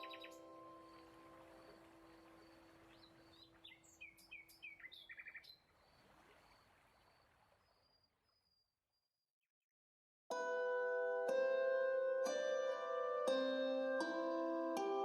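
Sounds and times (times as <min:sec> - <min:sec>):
faint birdsong chirps: 0:00.0 - 0:09.1
soft outdoor background: 0:00.0 - 0:09.3, 0:10.3 - 0:15.0
harp chord: 0:10.3 - 0:15.0.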